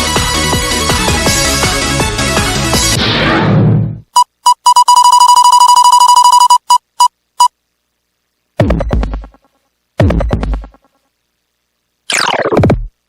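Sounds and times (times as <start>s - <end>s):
electronic beeps: 4.2s - 7.5s.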